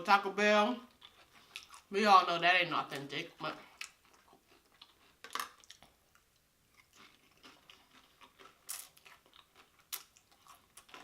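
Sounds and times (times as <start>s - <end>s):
chewing and crunching: 0.9s - 1.9s, 3.6s - 11.0s.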